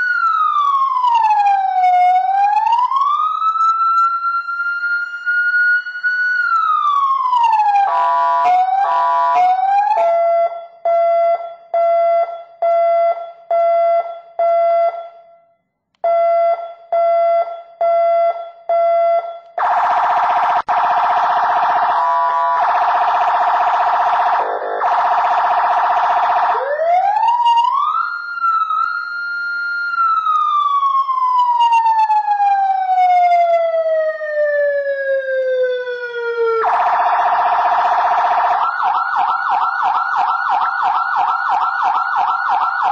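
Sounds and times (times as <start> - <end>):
electronic siren wailing: 0.0 - 10.7, 19.6 - 42.9
siren rising chirps: 0.0 - 15.1, 16.0 - 42.9
steady siren tone switching on and off: 0.0 - 42.9.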